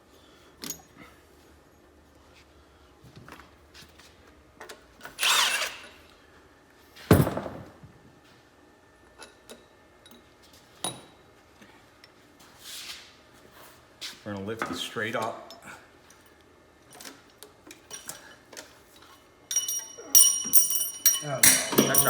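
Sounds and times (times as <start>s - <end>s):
heavy metal thunk: 7.1s - 7.8s
metal tool clanks: 19.5s - 22.0s.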